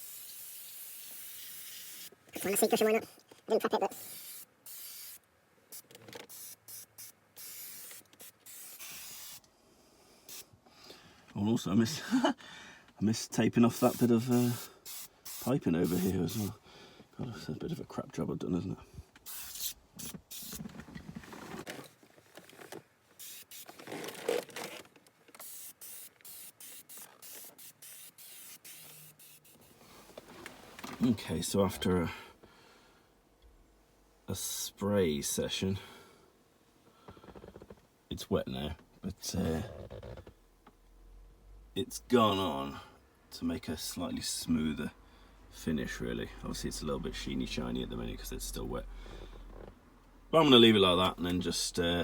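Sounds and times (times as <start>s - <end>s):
spray gun hissing bursts: 0.0s - 2.1s, 4.0s - 5.2s, 6.3s - 9.4s, 13.7s - 16.5s, 19.3s - 20.6s, 23.2s - 23.6s, 25.4s - 29.6s.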